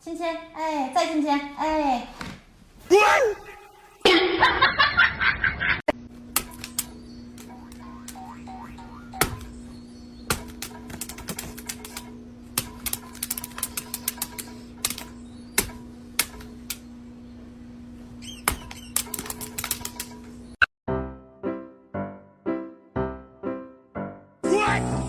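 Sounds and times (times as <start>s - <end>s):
steady low hum: 5.9s - 20.6s.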